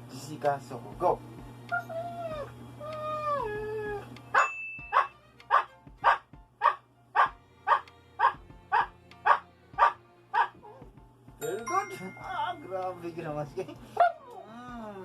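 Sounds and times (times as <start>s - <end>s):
dog whining: 1.7s - 10.9s, 14.0s - 14.6s
dog barking: 4.4s - 10.8s, 14.0s - 14.4s.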